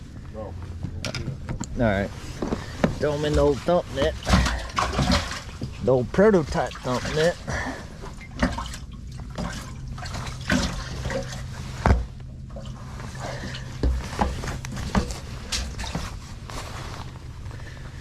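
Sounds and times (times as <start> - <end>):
steady low hum: 0.0 - 18.0
water splashing and dripping: 4.0 - 11.6.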